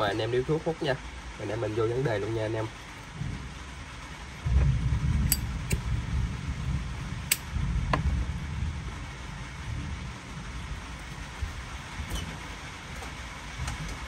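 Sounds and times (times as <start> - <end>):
steady low rumble: 0.0 - 14.0
lighter metallic clicks: 5.3 - 5.8, 7.3 - 7.5.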